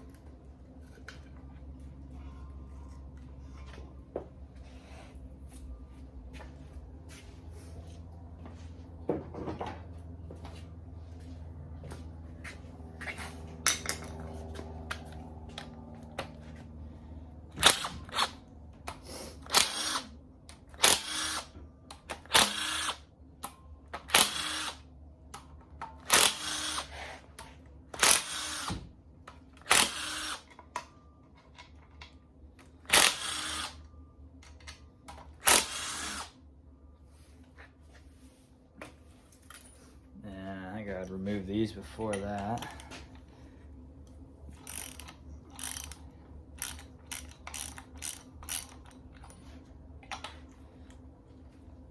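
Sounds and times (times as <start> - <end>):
steady low hum: 0.0 - 51.9
cordless power tool bursts: 17.6 - 18.4, 19.4 - 20.1, 20.8 - 21.6, 22.2 - 23.0, 24.0 - 24.8, 26.0 - 27.2, 28.0 - 28.9, 29.6 - 30.5, 32.9 - 33.8, 35.4 - 36.4.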